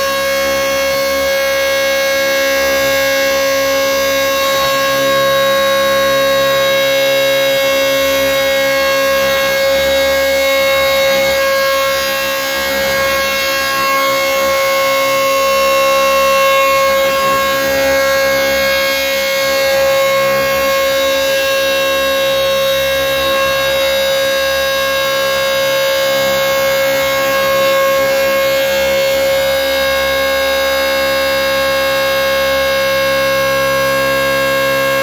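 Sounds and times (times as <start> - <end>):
siren steady tone: 0.0 - 35.0.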